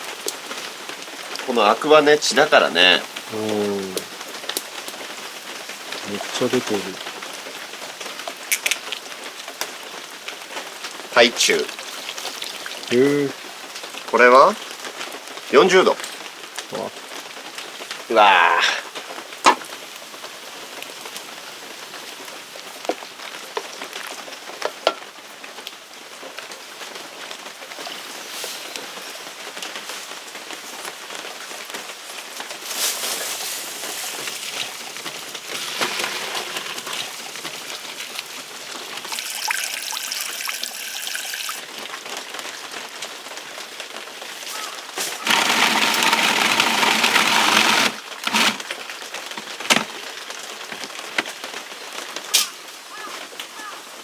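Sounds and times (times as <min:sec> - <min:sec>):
meat sizzling in a pan: 0:11.5 - 0:13.3, 0:32.6 - 0:41.7.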